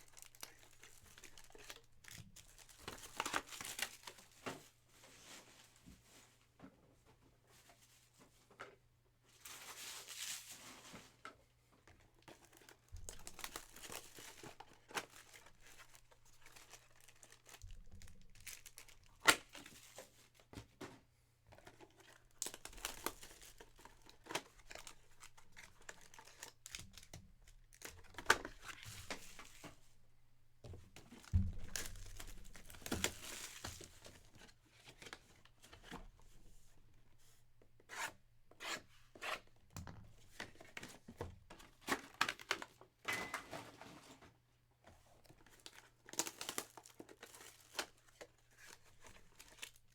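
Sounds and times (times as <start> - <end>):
card pack wrappers crinkling: 0.0 - 4.4, 12.4 - 20.0, 21.8 - 29.7, 31.0 - 34.4, 45.4 - 49.9.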